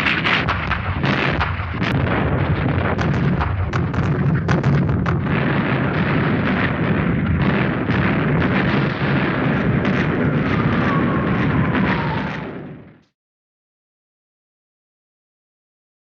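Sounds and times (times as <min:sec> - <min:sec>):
rapid gunfire: 0:00.0 - 0:10.8
explosions: 0:00.0 - 0:13.1.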